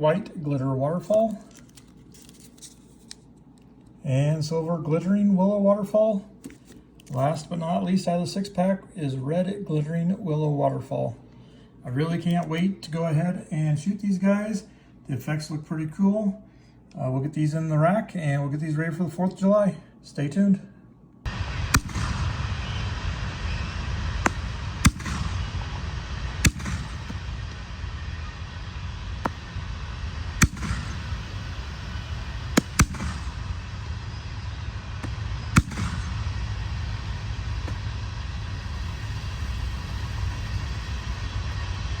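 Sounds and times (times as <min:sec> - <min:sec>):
steady low rumble: 0:21.0 - 0:42.0
firework shells banging: 0:21.8 - 0:22.3, 0:24.2 - 0:27.7, 0:30.2 - 0:33.7, 0:35.0 - 0:36.7.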